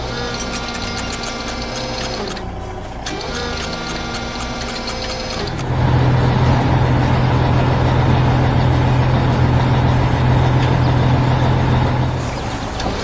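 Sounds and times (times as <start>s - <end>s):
heavy vehicle engine rumble: 5.2s - 13.0s.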